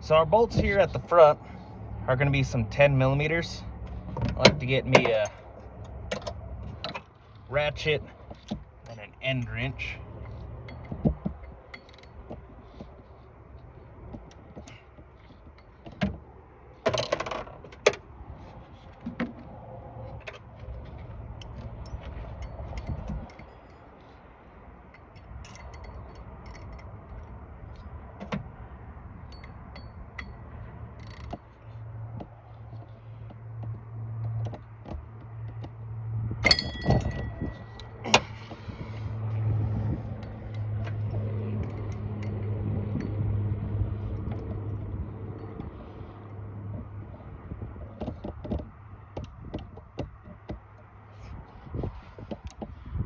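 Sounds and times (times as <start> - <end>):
metal clanking on metal: 3.9 - 7.1, 7.8 - 12.8, 36.4 - 38.6
small metallic wrench clicks: 24.9 - 27.4, 31.0 - 31.4.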